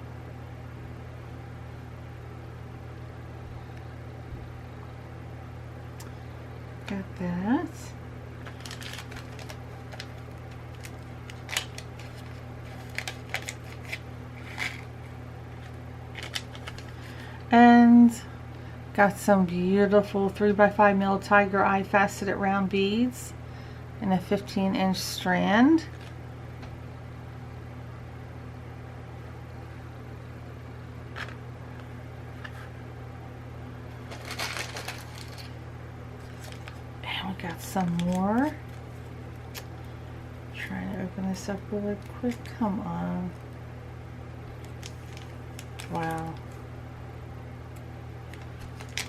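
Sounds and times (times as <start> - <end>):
steady low hum: 0.0 - 49.0
plastic bags and beads crinkling: 8.4 - 17.1, 34.0 - 35.6, 36.2 - 39.7, 44.6 - 46.6, 48.3 - 49.0.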